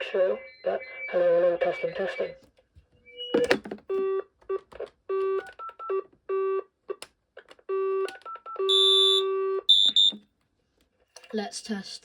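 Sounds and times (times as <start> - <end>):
electronic telephone beeps: 8.2 - 10.2.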